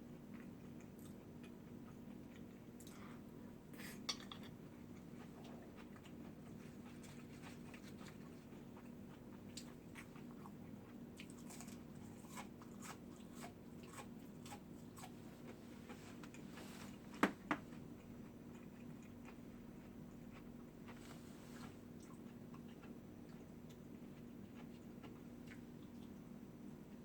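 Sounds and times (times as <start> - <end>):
faint steady hum: 0.0 - 27.0
person chewing food: 0.1 - 26.2.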